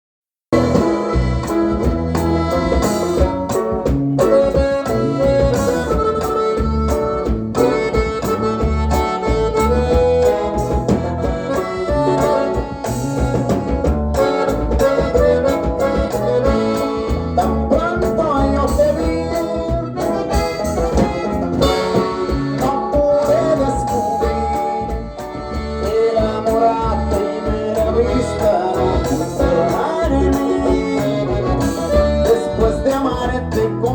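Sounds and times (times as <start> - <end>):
live band playing instrumental: 0.5 - 33.9.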